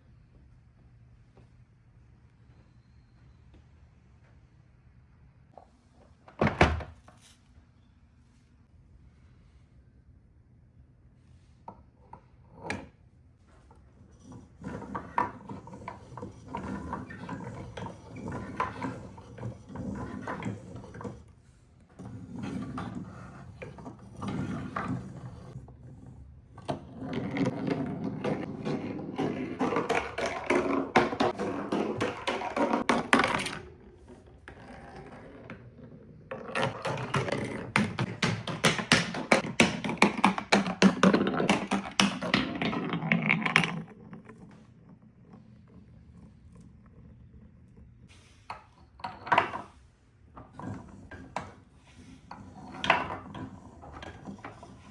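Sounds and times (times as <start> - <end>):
marbles rolling and clattering: 36.4 - 47.9.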